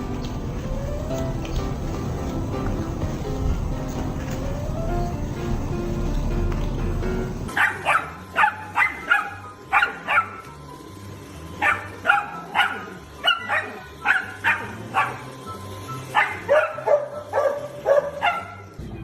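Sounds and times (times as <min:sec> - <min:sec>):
quiet background music: 0:00.0 - 0:19.0
dog barking: 0:07.5 - 0:10.4, 0:11.6 - 0:15.4, 0:16.1 - 0:18.7.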